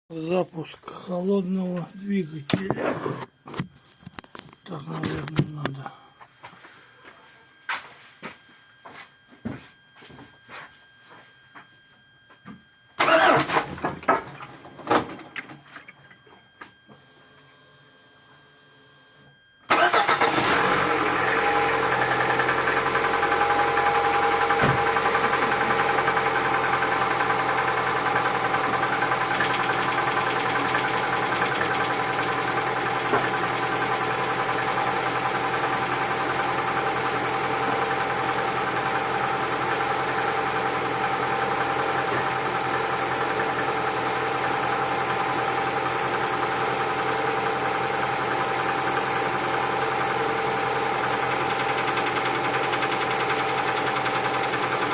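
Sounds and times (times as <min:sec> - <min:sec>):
diesel truck engine idling: 0:19.7 - 0:36.3.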